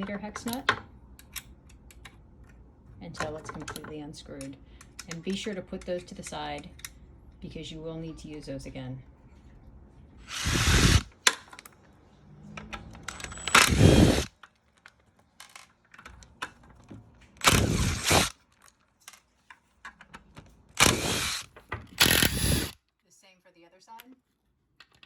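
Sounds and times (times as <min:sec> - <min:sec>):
cordless drill running: 0:10.2 - 0:11.1, 0:13.4 - 0:14.3, 0:17.4 - 0:18.3, 0:20.8 - 0:22.8
tools and bolts clicking: 0:12.6 - 0:16.8, 0:20.8 - 0:22.8.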